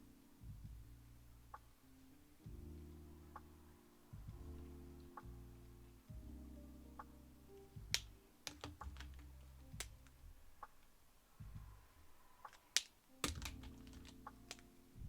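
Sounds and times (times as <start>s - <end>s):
soft background music: 0.0s - 15.0s
sharp clicks: 12.4s - 14.7s.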